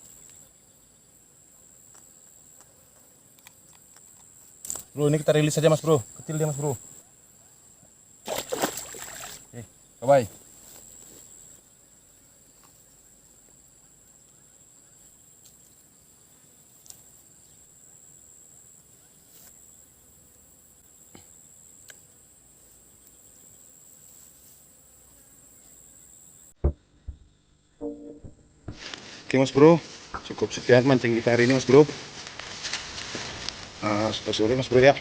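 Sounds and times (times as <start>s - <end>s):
insects chirring: 0.0s - 35.0s
loud thump: 26.6s - 27.3s, 27.9s - 28.9s.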